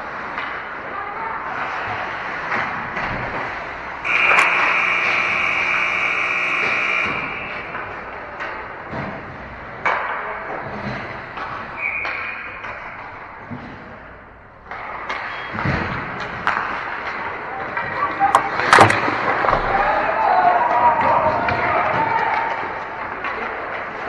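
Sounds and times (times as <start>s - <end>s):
hockey sticks and puck clacking: 0.0s - 0.9s, 1.6s - 24.0s
arena horn or whistle tone: 4.1s - 7.7s.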